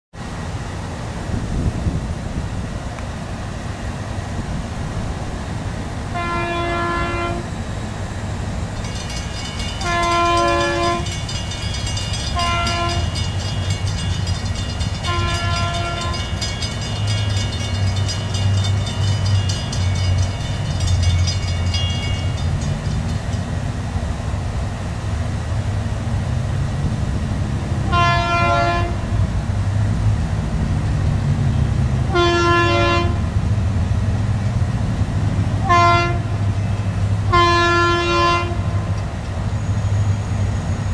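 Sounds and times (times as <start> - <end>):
diesel engine rumble: 0.2 - 40.9
train air horn blasts: 6.1 - 7.6, 9.8 - 11.2, 12.4 - 13.2, 15.0 - 16.3, 27.9 - 29.0, 32.1 - 33.3, 35.6 - 36.4, 37.3 - 38.7.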